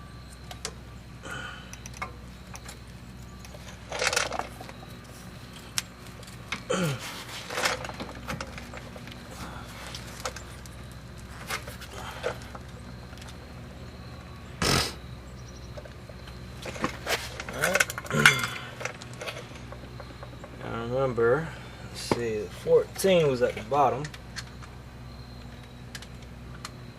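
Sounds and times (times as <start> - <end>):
metal tools clinking: 1.7 - 13.4, 15.8 - 20.6.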